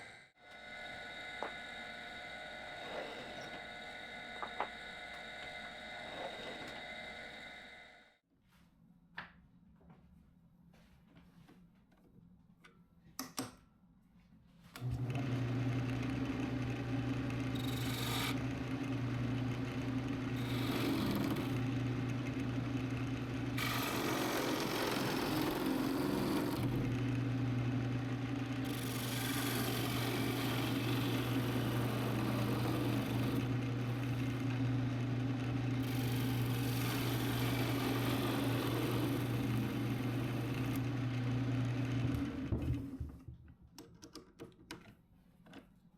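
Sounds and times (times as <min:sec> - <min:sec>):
power tool cutting wood: 0:00.0 - 0:08.0, 0:14.8 - 0:42.6
power tool motor hum: 0:00.4 - 0:08.0, 0:14.9 - 0:42.7.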